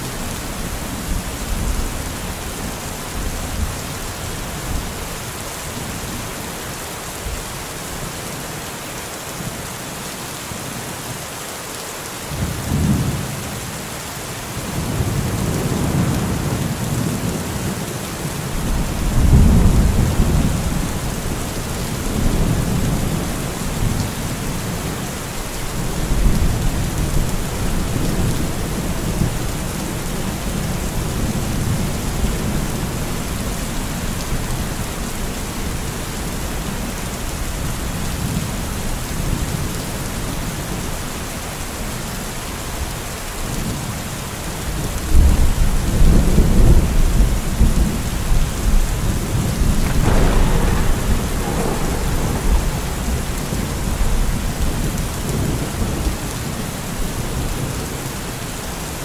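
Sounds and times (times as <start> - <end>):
rain hissing: 14.2 - 34.6, 47.9 - 57.8
rolling thunder: 14.7 - 24.8, 45.1 - 57.7.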